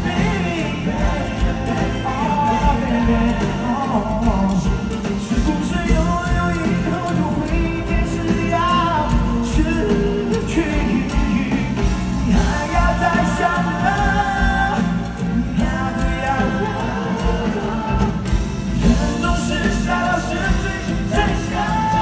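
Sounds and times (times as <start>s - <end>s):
pop band playing loudly: 0.0s - 22.0s.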